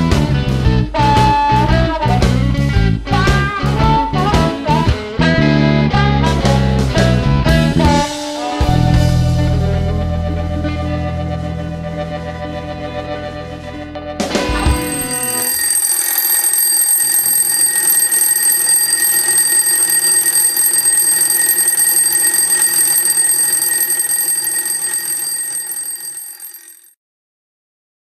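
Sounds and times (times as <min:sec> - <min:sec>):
alarm clock ringing: 0:14.5 - 0:26.9.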